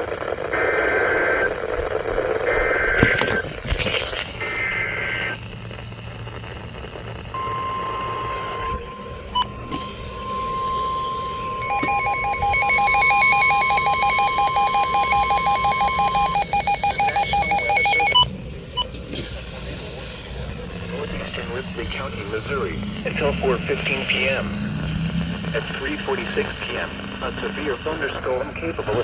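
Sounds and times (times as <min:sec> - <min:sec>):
steady alarm tone: 0:07.3 - 0:18.9
harsh rapid alarm beeps: 0:07.3 - 0:19.0.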